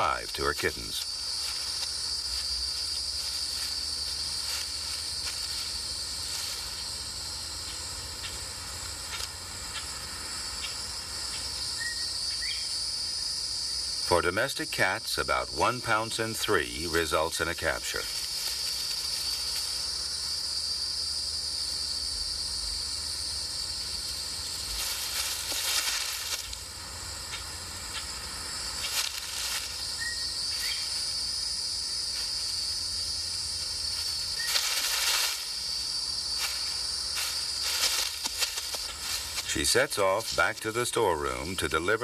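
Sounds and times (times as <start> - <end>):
high-pitched insect chorus: 0.0 - 42.0
short rustling: 0.6 - 7.0, 18.0 - 20.2, 23.9 - 26.7, 28.8 - 31.1, 33.6 - 39.6.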